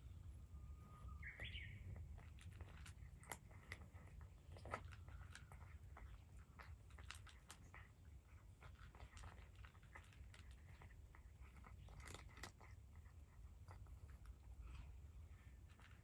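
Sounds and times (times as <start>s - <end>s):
cat chewing food: 1.8s - 16.0s.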